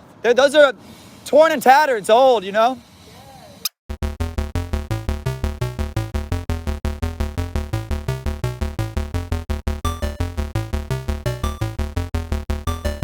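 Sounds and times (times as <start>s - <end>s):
deep bass notes: 3.9s - 13.0s
electronic music with synthesizer: 3.9s - 13.0s.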